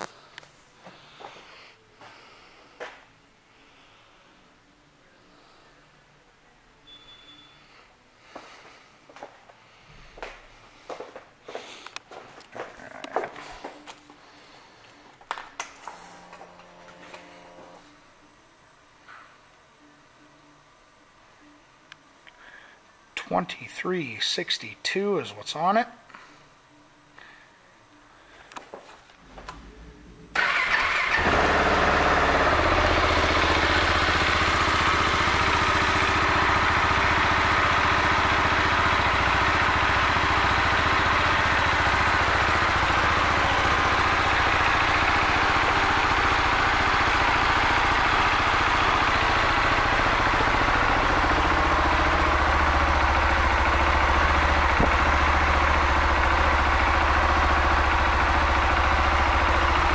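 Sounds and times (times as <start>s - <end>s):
motorcycle engine starting and idling: 15.8s - 17.9s, 29.3s - 59.9s.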